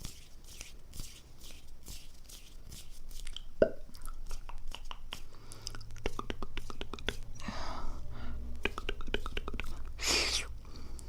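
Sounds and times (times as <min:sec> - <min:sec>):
wet mouth clicks and smacks: 0:03.1 - 0:07.3, 0:08.6 - 0:11.0
soft airy breaths: 0:05.2 - 0:05.9, 0:07.3 - 0:08.6, 0:09.6 - 0:11.0.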